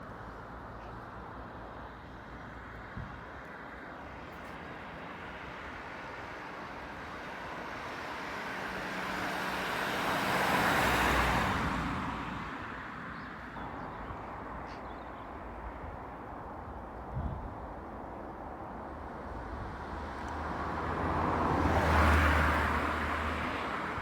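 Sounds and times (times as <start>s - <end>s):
road vehicle passing: 4.1s - 15.6s, 18.9s - 24.0s.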